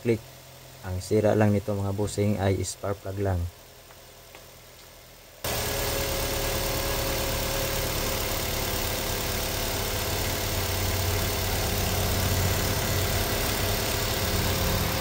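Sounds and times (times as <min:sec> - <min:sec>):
car engine idling: 0:00.0 - 0:15.0.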